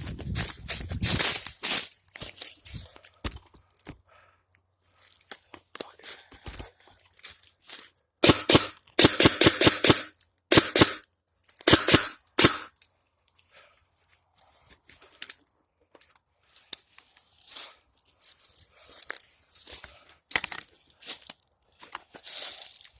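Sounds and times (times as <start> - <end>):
airsoft guns firing: 8.2 - 11.0, 11.6 - 12.7
rustling: 16.4 - 22.9.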